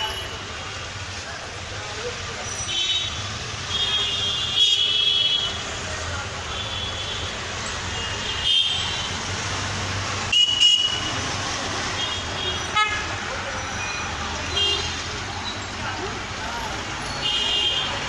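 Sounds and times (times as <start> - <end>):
hum of traffic engines: 0.0 - 18.0
car horn honks: 17.2 - 18.0.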